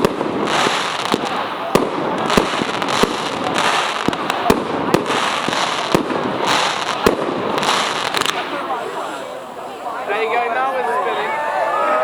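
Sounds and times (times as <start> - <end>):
firework bangs: 0.0 - 9.3
fireworks crackling hiss: 0.0 - 10.2.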